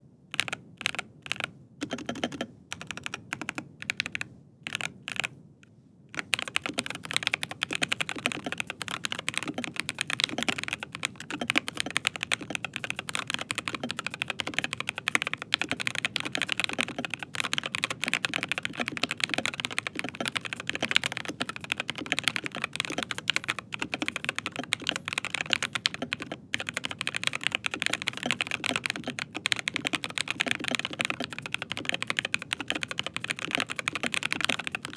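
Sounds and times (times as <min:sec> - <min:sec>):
mechanical keyboard typing: 0:00.3 - 0:05.3, 0:06.2 - 0:34.9.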